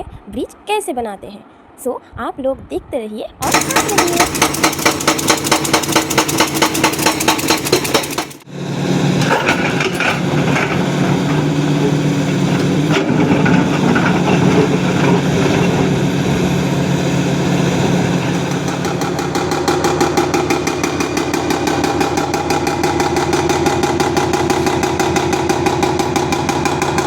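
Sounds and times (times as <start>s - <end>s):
fast rhythmic pulsing: 3.4s - 8.4s
machinery engine running: 3.4s - 27.0s.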